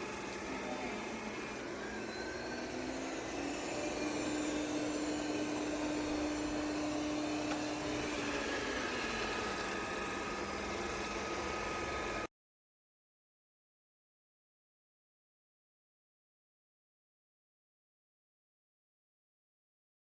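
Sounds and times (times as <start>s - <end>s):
robot vacuum motor hum: 0.0s - 12.3s.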